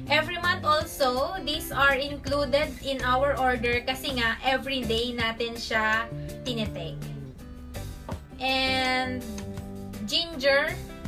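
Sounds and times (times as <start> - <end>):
background music with held notes: 0.0 - 11.0
steady bass line: 0.0 - 11.0.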